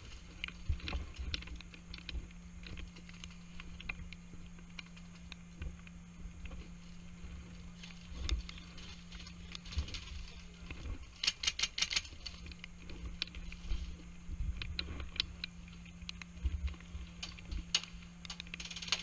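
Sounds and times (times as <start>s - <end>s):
steady low hum: 0.0s - 19.0s
sharp clicks: 10.7s - 13.5s, 14.6s - 19.0s.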